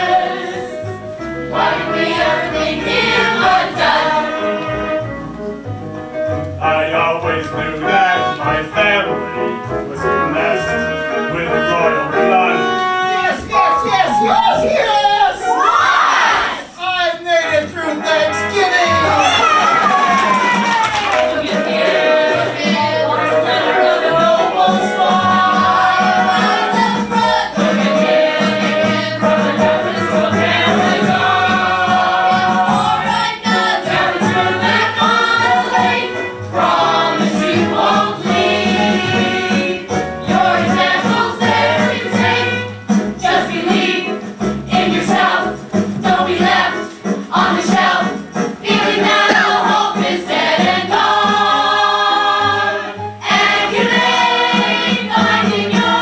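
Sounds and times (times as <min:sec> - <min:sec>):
instrumental accompaniment: 0:00.0 - 0:16.7, 0:17.3 - 0:56.0
cast singing in chorus: 0:47.3 - 0:56.0.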